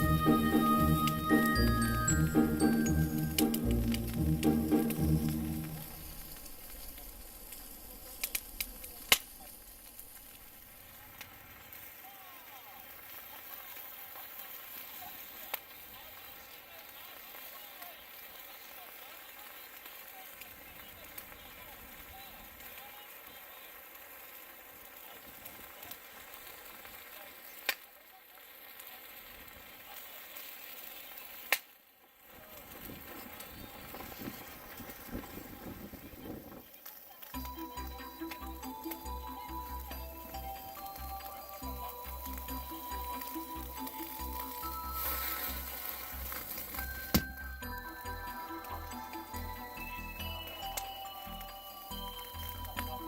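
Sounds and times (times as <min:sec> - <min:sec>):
campfire hissing: 0:00.0 - 0:53.0
fire crackling pops: 0:00.0 - 0:53.0.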